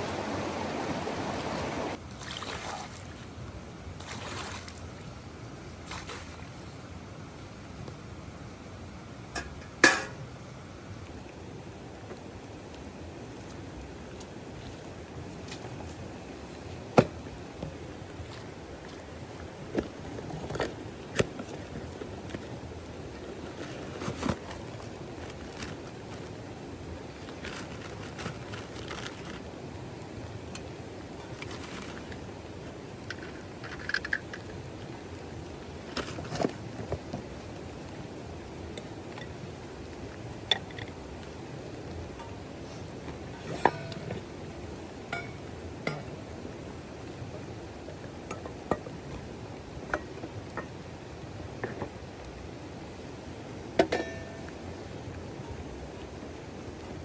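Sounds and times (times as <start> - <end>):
steady rain: 0.0 - 2.1, 10.1 - 57.0
dishes clinking and knocking: 9.4 - 10.2, 43.4 - 44.2, 45.2 - 46.2, 53.8 - 54.4.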